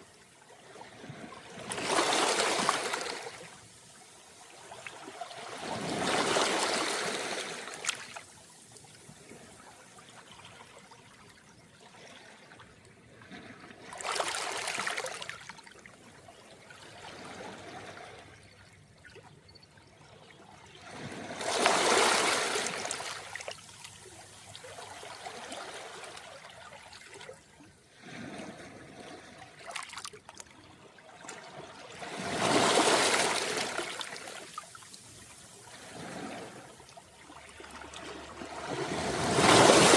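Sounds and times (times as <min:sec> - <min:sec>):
waves washing on pebbles: 0:01.6 - 0:03.9, 0:05.4 - 0:08.6, 0:21.4 - 0:24.1, 0:32.0 - 0:36.8, 0:37.6 - 0:39.9.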